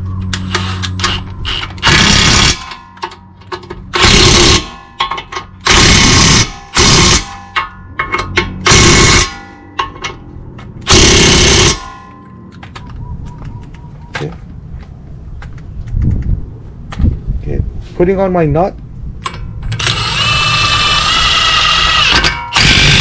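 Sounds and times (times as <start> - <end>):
impact wrench bursts: 0.4 - 3.2, 3.9 - 7.7, 8.6 - 9.4, 10.8 - 12.0, 19.8 - 23.0.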